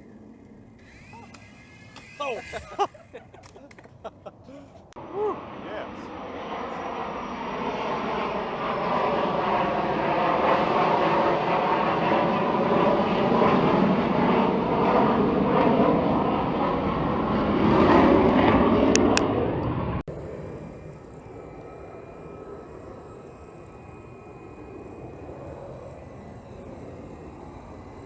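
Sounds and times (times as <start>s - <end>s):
military jet flying over: 0.0s - 28.0s.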